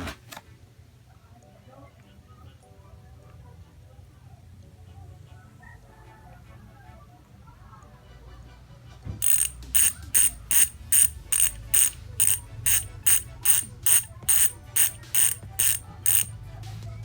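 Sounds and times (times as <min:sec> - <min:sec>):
bicycle hub ratcheting: 0:09.2 - 0:16.3.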